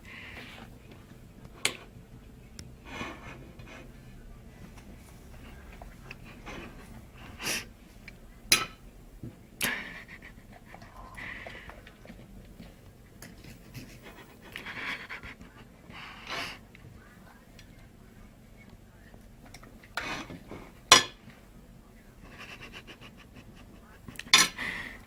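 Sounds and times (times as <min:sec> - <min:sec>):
dog panting: 0:09.6 - 0:16.7, 0:22.2 - 0:25.0.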